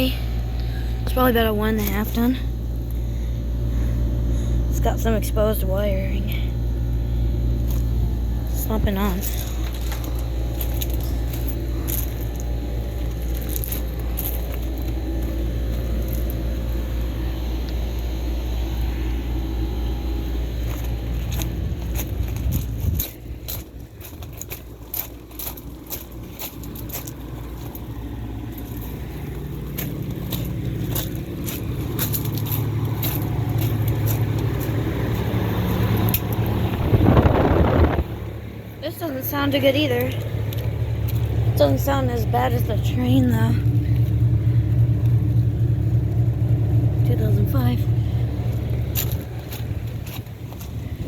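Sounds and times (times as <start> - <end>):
air conditioner unit humming: 0.0 - 51.0
loud rushing burst: 36.6 - 38.4.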